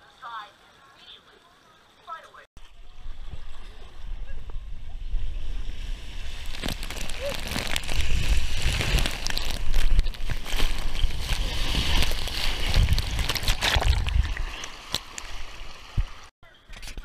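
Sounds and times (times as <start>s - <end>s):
low rumble on microphone: 2.6s - 11.9s
water sloshing and splashing: 5.7s - 16.3s.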